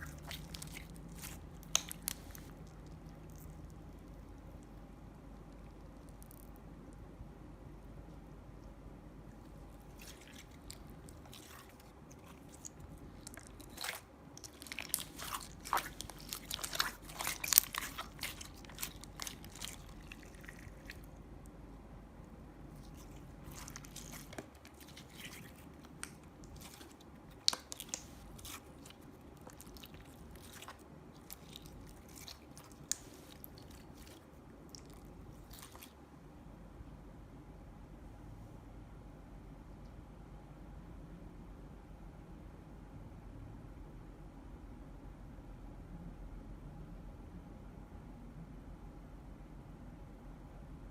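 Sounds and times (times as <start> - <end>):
slime squeezed by hand: 0.0 - 3.5, 9.7 - 21.1, 22.7 - 36.0.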